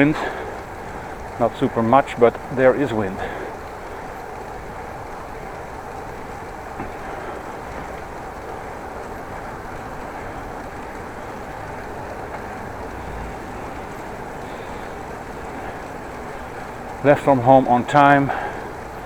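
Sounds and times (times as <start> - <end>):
bicycle tyres rolling: 0.0 - 19.0.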